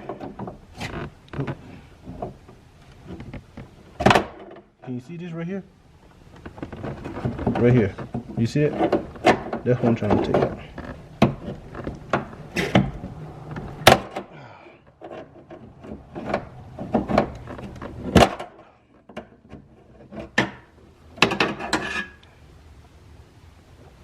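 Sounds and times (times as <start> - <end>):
broken plastic pieces knocking and scraping: 6.3 - 14.3.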